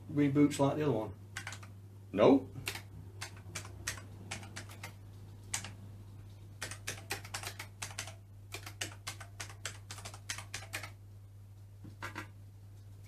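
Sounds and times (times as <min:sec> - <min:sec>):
keyboard keys clicking: 0:01.4 - 0:01.7, 0:02.6 - 0:05.8, 0:06.6 - 0:11.0.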